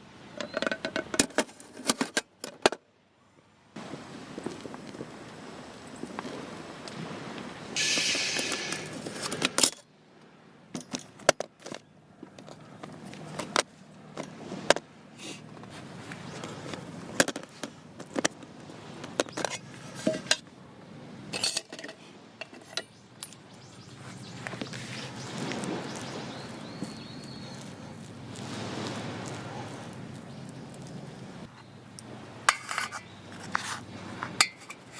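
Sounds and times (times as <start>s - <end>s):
brief hissing rush: 7.8s - 9.4s.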